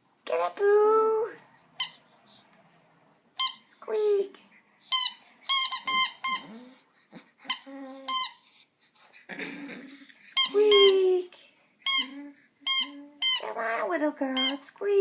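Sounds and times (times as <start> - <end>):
squeaky toy squeaking: 1.8 - 2.0, 3.4 - 3.8, 4.9 - 6.7, 7.4 - 8.5, 10.3 - 11.0, 11.8 - 14.7.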